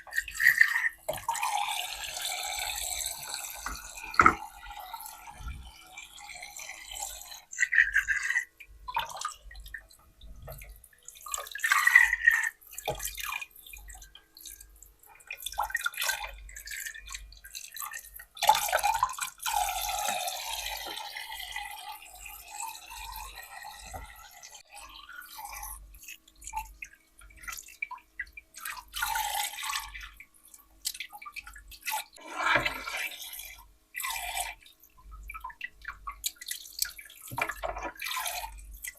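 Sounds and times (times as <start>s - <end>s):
tap water dripping and splashing: 0.0s - 6.2s, 7.1s - 38.9s
water flowing: 0.0s - 9.3s.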